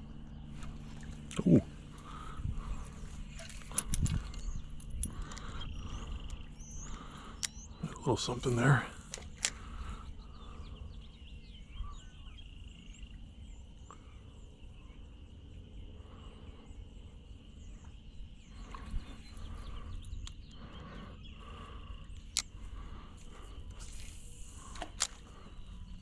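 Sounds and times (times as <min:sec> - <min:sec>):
low outdoor rumble: 0:00.0 - 0:26.0
small birds chirping: 0:00.0 - 0:26.0.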